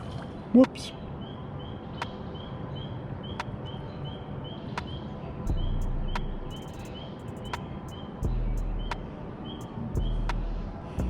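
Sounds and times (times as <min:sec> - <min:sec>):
low rumble: 0:05.5 - 0:06.6, 0:10.0 - 0:11.0
small animal chirping: 0:05.7 - 0:10.1.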